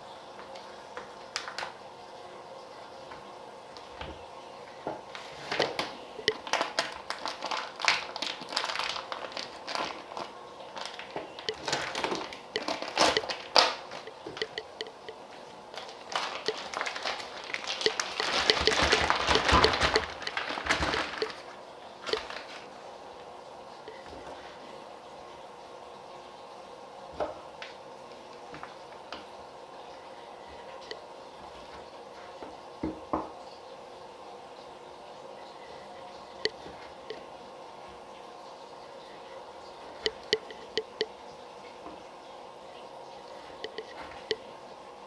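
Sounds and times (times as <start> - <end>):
plastic packaging crinkling: 5.5 - 14.6, 15.7 - 22.7
clicks and knocks: 17.8 - 21.4.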